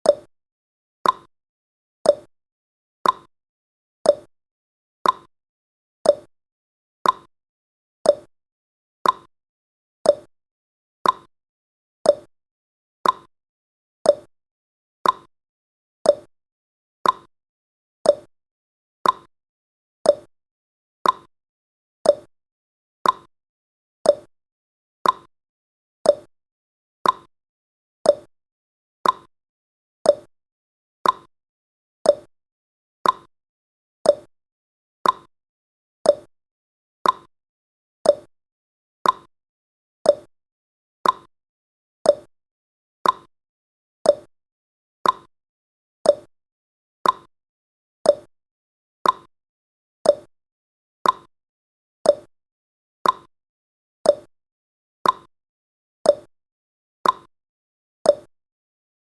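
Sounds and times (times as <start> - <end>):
timer ticking: 1.0 - 1.3, 2.1 - 2.3, 3.0 - 3.3, 4.1 - 4.3, 5.0 - 5.3, 6.1 - 6.3, 7.0 - 7.3, 8.1 - 8.3, 9.0 - 9.3, 10.1 - 10.3, 11.0 - 11.3, 12.1 - 12.3, 13.0 - 13.3, 14.1 - 14.3, 15.0 - 15.3, 16.1 - 16.3, 17.0 - 17.3, 18.1 - 18.3, 19.0 - 19.3, 20.1 - 20.3, 21.0 - 21.3, 22.0 - 22.3, 23.0 - 23.3, 24.1 - 24.3, 25.0 - 25.3, 26.1 - 26.3, 27.0 - 27.3, 28.0 - 28.3, 29.0 - 29.3, 30.1 - 30.3, 31.0 - 31.3, 32.1 - 32.3, 33.0 - 33.3, 34.1 - 34.3, 35.0 - 35.3, 36.0 - 36.3, 37.0 - 37.3, 38.0 - 38.3, 39.0 - 39.3, 40.1 - 40.3, 41.0 - 41.3, 42.1 - 42.3, 43.0 - 43.3, 44.1 - 44.3, 45.0 - 45.3, 46.1 - 46.3, 47.0 - 47.3, 48.1 - 48.3, 49.0 - 49.3, 50.1 - 50.3, 51.0 - 51.3, 52.1 - 52.3, 53.0 - 53.3, 54.1 - 54.3, 55.0 - 55.3, 56.1 - 56.3, 57.0 - 57.3, 58.1 - 58.3.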